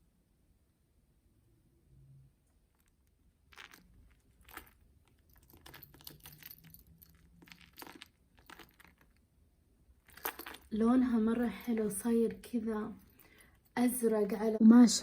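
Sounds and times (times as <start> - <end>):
packaging rustling and crinkling: 3.5 - 9.2.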